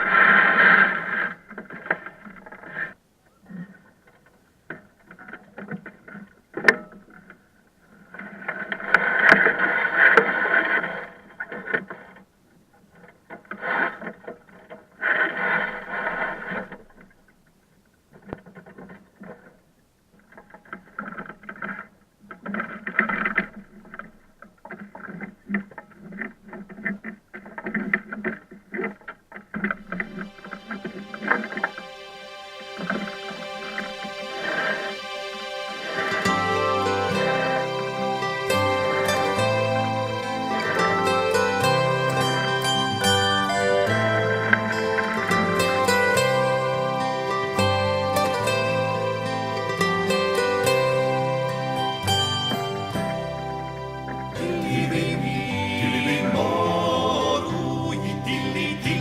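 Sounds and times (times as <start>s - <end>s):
wind: 0.0s - 56.2s
water rushing: 29.7s - 59.0s.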